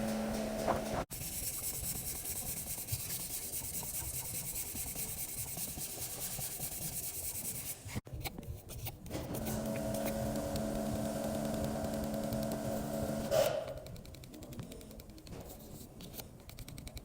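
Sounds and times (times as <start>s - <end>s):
sanding car bodywork: 0.0s - 7.9s.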